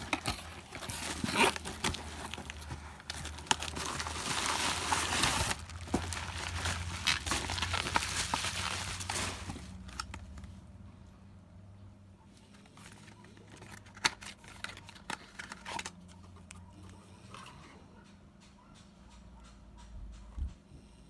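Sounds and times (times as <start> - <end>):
packaging crinkling: 0.0 - 10.6.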